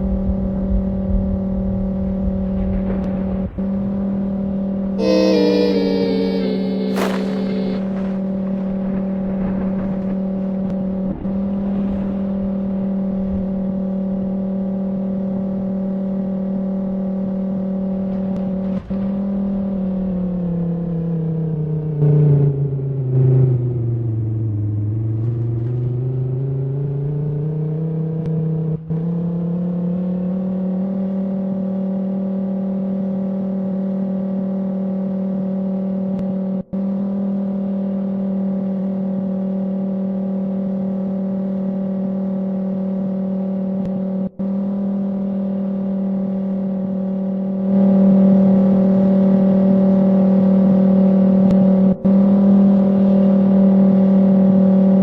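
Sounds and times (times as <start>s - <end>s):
tornado siren winding up: 5.0s - 8.6s.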